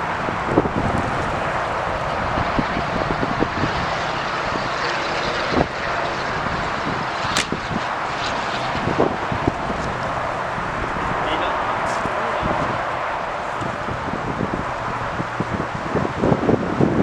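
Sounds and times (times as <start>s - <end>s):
wind buffeting microphone: 0.0s - 17.0s
sharp click: 7.3s - 7.6s.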